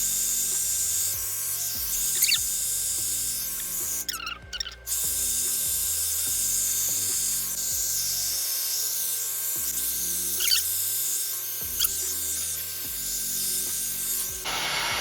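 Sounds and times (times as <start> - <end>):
background music with bass line: 0.0 - 15.0
high hiss: 14.4 - 15.0.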